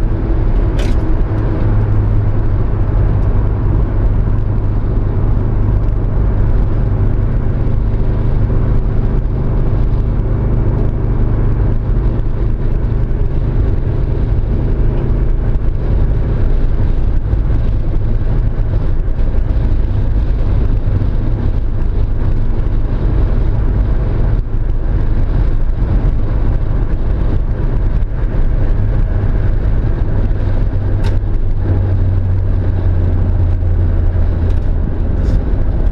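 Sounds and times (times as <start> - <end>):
car engine running with misfire: 0.0 - 35.9.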